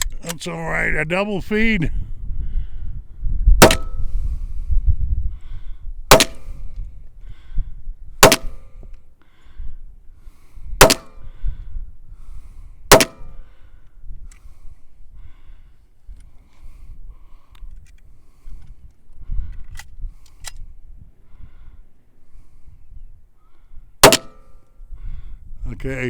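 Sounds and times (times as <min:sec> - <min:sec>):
wind rumble on microphone: 0:01.9 - 0:26.0
pistol shots: 0:03.6 - 0:04.0, 0:06.1 - 0:06.5, 0:08.2 - 0:08.7, 0:10.8 - 0:11.2, 0:12.9 - 0:13.3, 0:24.0 - 0:24.4.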